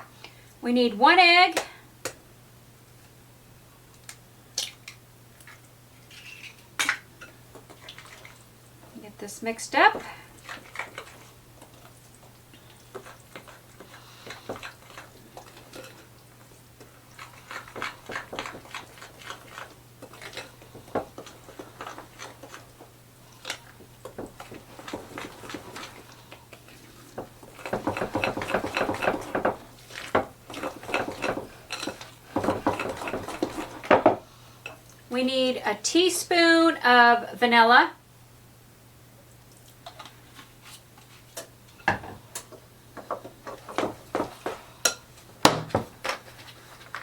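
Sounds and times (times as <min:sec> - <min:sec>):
utensil stirring batter in bowl: 0:09.1 - 0:34.2.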